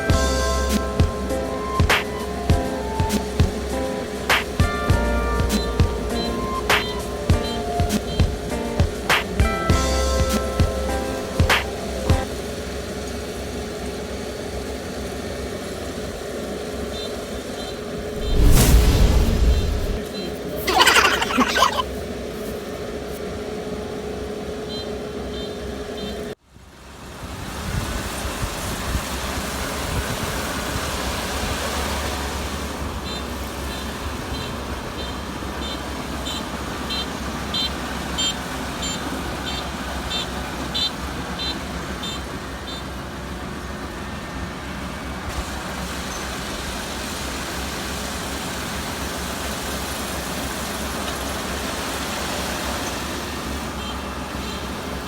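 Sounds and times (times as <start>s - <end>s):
combine harvester running: 0.0s - 20.0s, 30.4s - 55.0s.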